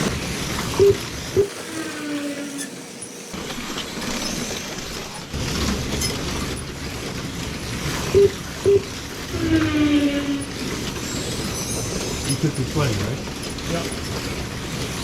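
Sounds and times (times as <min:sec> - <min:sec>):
slot cars whirring: 0:00.0 - 0:15.0
short electronic beeps: 0:00.8 - 0:01.5, 0:08.1 - 0:08.9.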